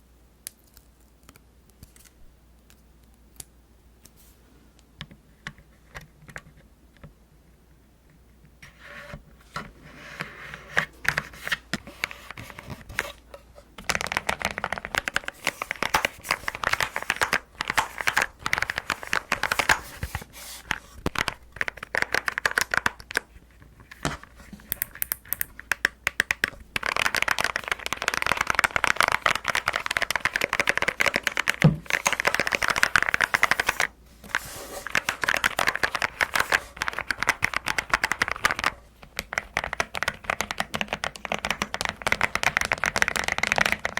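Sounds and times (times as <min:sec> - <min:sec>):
mechanical keyboard typing: 0:13.8 - 0:19.8, 0:21.1 - 0:23.2, 0:24.7 - 0:33.9, 0:34.9 - 0:43.9.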